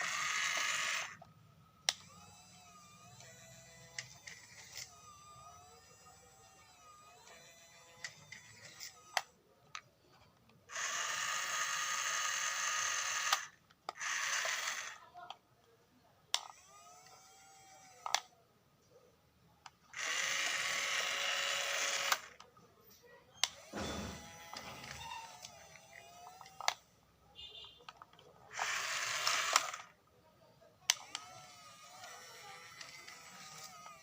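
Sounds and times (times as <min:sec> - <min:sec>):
toy gear motors whirring: 0:00.0 - 0:15.4, 0:16.3 - 0:18.4, 0:19.6 - 0:22.5, 0:23.4 - 0:27.0, 0:27.8 - 0:30.0, 0:30.8 - 0:34.0
sharp plastic clicks: 0:27.8 - 0:29.9.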